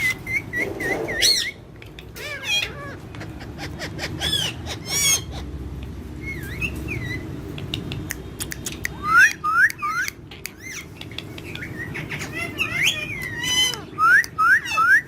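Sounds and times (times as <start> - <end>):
parrots whistling chirps: 0.0 - 5.5, 6.2 - 7.4, 8.6 - 15.0
sharp clicks: 9.7 - 11.7.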